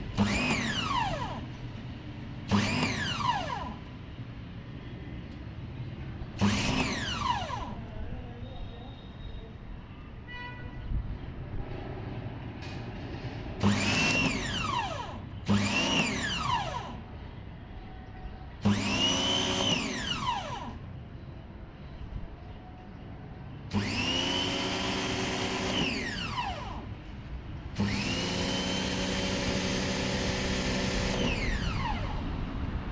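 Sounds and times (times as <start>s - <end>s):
pressure washer motor whining: 0.0s - 1.6s, 2.5s - 3.9s, 6.4s - 8.0s, 13.6s - 17.1s, 18.6s - 21.0s, 23.7s - 32.9s.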